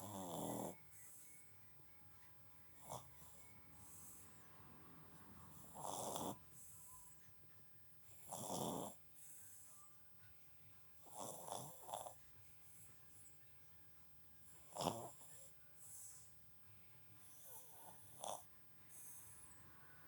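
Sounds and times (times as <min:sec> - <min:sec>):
puppy snoring: 0:00.0 - 0:01.6, 0:02.6 - 0:07.3, 0:08.0 - 0:09.9, 0:11.0 - 0:13.4, 0:14.4 - 0:16.4, 0:17.2 - 0:19.7
soft breaths: 0:00.0 - 0:20.0.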